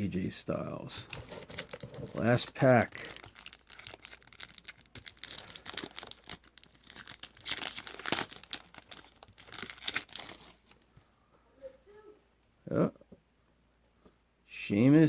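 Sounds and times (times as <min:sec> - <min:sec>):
foil pack tearing and crinkling: 0:01.1 - 0:10.8.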